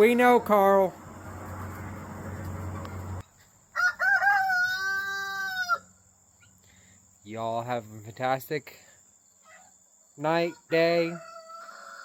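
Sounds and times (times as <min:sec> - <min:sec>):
rooster crowing: 0:01.0 - 0:06.0, 0:11.0 - 0:12.0.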